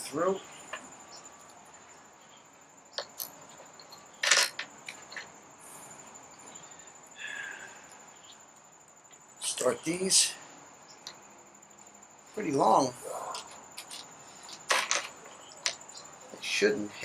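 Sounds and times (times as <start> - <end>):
small ticks: 10.9 - 11.2.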